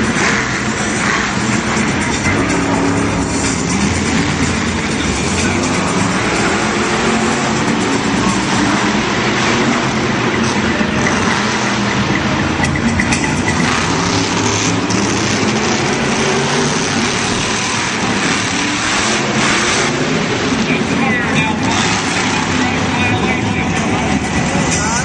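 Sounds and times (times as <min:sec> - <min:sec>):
truck engine running loudly: 0:00.0 - 0:25.0.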